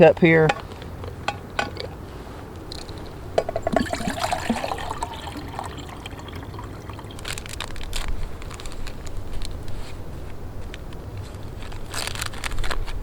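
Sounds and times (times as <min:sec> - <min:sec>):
water pouring into cup: 0:03.4 - 0:08.7.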